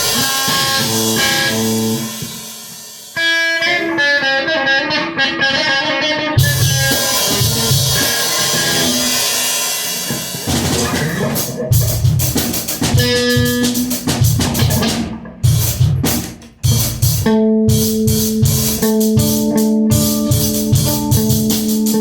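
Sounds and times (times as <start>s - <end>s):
electric guitar held notes: 0.0s - 2.5s, 3.2s - 9.3s, 10.0s - 22.0s
kick and snare drum hits: 11.8s - 20.1s.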